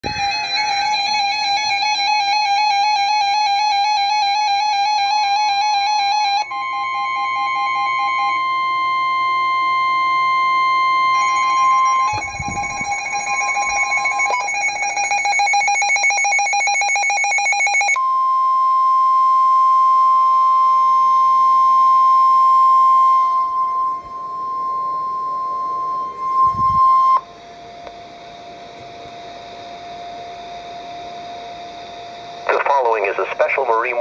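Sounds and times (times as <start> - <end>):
steady high alarm tone: 0.0 - 34.0
rapid pulsing beep: 6.4 - 18.0, 21.6 - 27.2
radio hiss: 32.4 - 34.0.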